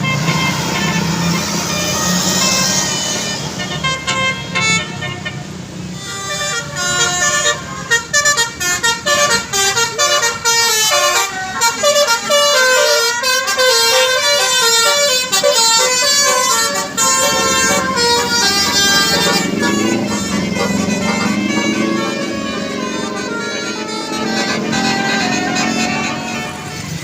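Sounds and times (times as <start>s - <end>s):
musical air horn melody: 0.0s - 27.0s.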